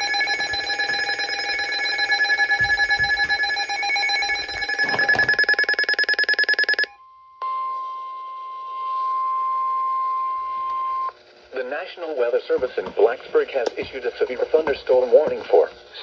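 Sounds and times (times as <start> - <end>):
steady single-pitch alarm tone: 0.0 - 10.3.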